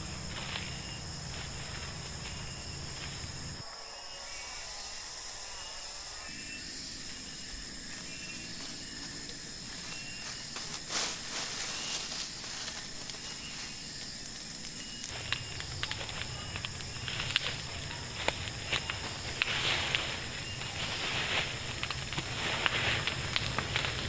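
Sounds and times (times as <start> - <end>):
high-pitched insect buzzing: 0.0 - 21.5
light crackles and rustles: 8.6 - 24.0.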